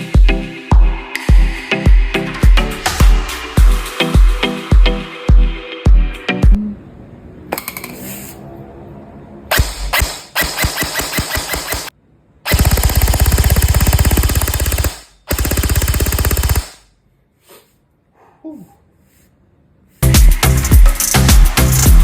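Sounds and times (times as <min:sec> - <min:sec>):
airsoft rifle firing bursts: 0:09.5 - 0:11.9, 0:12.5 - 0:16.8.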